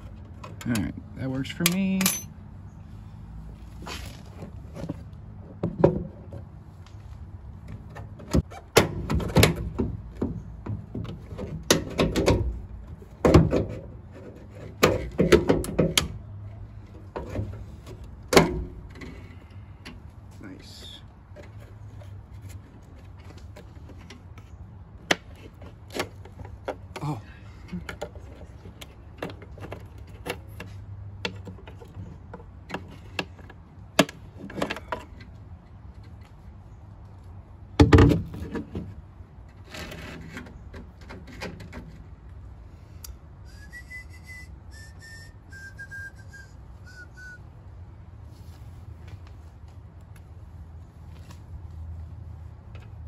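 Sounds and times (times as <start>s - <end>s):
person whistling descending notes: 43.4s - 47.4s.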